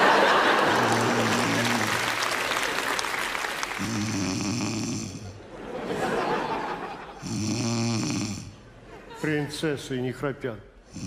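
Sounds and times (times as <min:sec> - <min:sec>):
woman snoring: 0:00.7 - 0:02.2, 0:03.7 - 0:05.4, 0:07.2 - 0:08.5.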